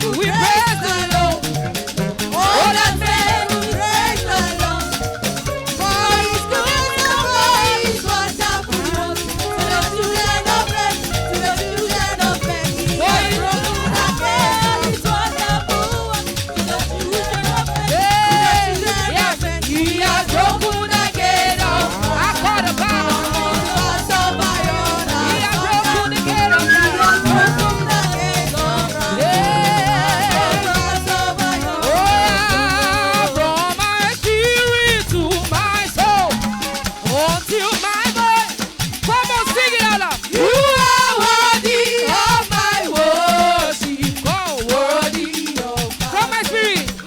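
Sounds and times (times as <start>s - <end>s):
bass line: 0.0s - 7.0s, 8.2s - 33.6s
shaker percussion: 0.0s - 47.0s
choir singing: 2.4s - 5.1s, 5.8s - 19.0s, 20.0s - 33.6s
band playing: 20.4s - 33.6s.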